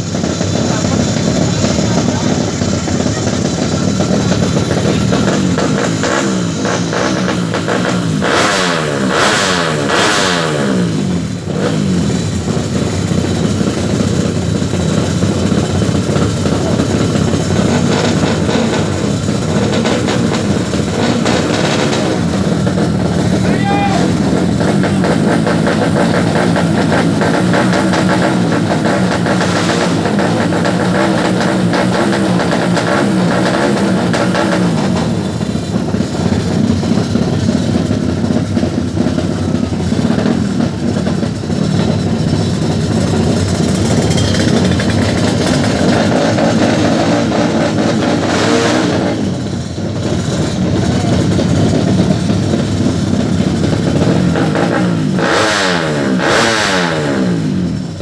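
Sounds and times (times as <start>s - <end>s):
motorcycle engine revving: 0.0s - 58.0s.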